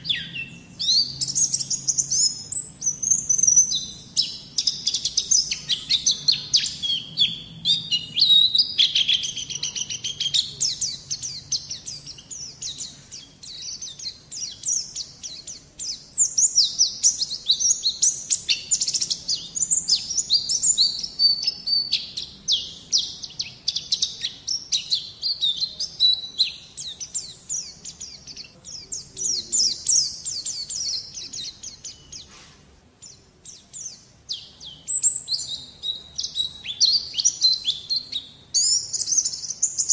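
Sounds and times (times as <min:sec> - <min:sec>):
bird twittering chirps: 0:00.0 - 0:39.9.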